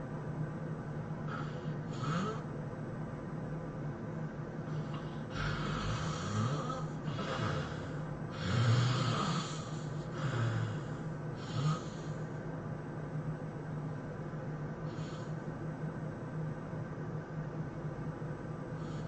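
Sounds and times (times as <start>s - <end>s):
low hum: 0.0s - 19.0s
person snoring: 1.3s - 2.5s, 4.7s - 12.2s.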